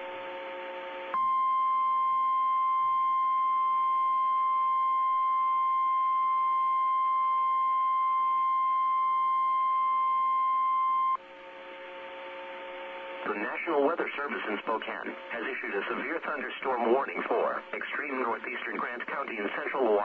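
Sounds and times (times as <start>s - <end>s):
radio hum and hiss: 11.2s - 20.0s.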